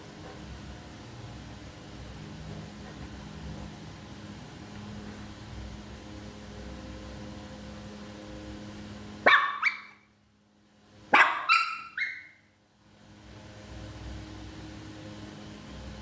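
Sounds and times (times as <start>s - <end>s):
small dog barking: 9.2s - 10.0s, 11.1s - 12.4s.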